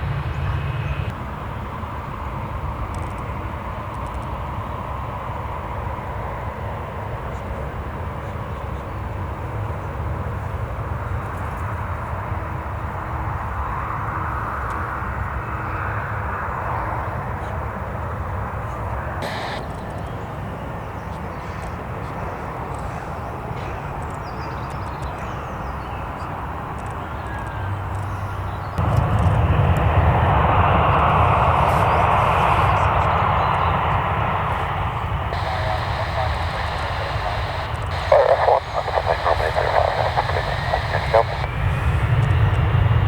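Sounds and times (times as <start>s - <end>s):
distant jet engines rumbling: 15.8s - 20.3s, 28.2s - 43.0s.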